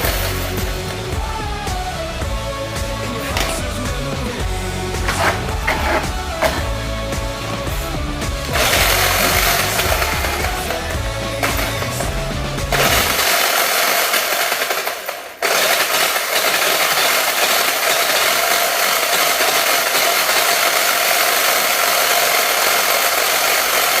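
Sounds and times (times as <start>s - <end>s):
rc car motor grinding: 8.5s - 12.0s, 12.7s - 24.0s.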